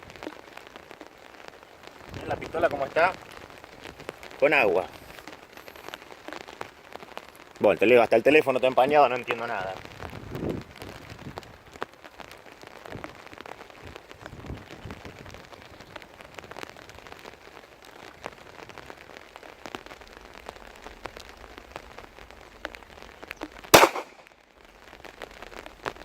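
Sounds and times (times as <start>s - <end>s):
steady rain: 0.0s - 26.0s
pistol shot: 23.8s - 24.2s.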